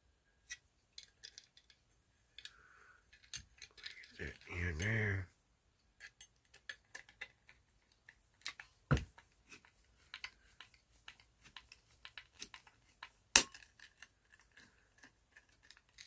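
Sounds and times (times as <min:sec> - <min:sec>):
clicks taps and scrapes of hand work: 0:05.9 - 0:16.0.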